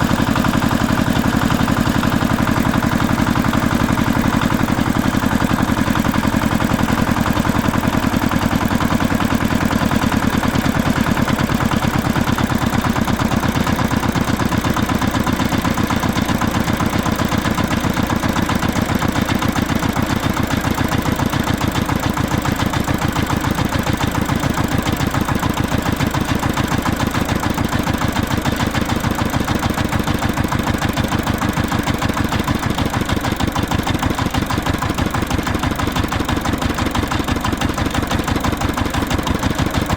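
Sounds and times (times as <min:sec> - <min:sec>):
diesel tractor engine chugging: 0:00.0 - 0:39.9.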